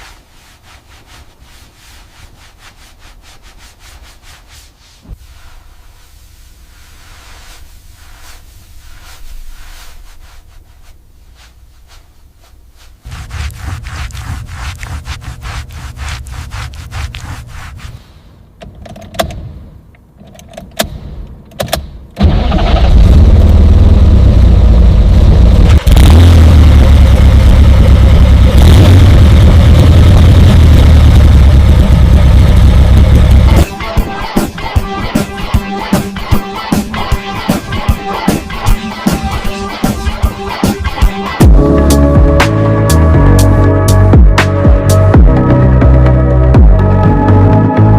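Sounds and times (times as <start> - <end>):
car engine cranking and starting: 21.5 - 23.6.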